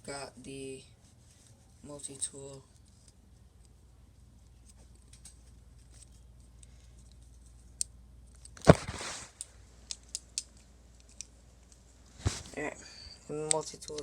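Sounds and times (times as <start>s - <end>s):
brief rustle: 8.6s - 9.5s, 12.2s - 12.6s.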